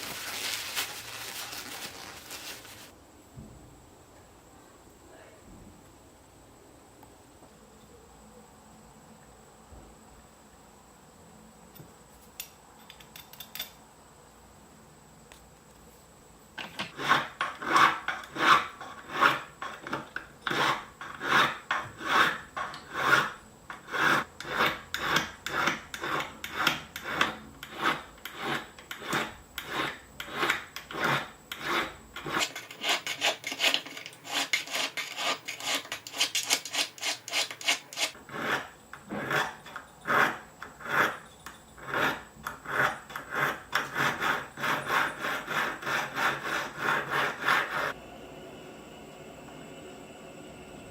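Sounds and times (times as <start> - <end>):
spoon rubbed with abrasive: 0.0 - 2.9, 20.4 - 48.0.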